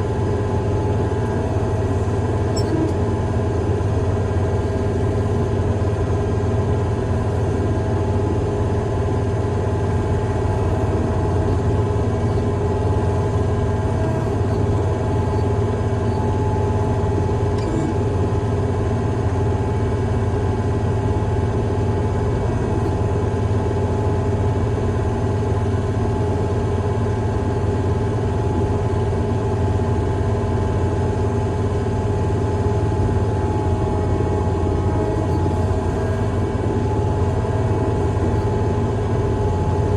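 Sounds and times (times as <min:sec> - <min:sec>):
steady whine: 0:00.0 - 0:20.2, 0:31.6 - 0:39.9
diesel engine droning: 0:00.0 - 0:24.6, 0:31.2 - 0:39.9.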